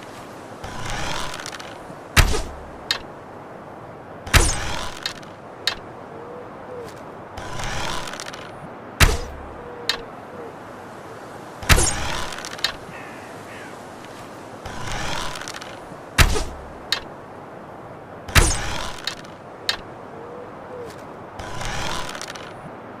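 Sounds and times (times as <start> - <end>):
rustling: 0.0 - 3.2, 11.6 - 17.1, 20.8 - 22.8
bow snapping as arrow fires: 0.8 - 3.0, 4.3 - 5.8, 7.6 - 10.0, 11.6 - 12.8, 14.9 - 17.1, 18.3 - 19.8.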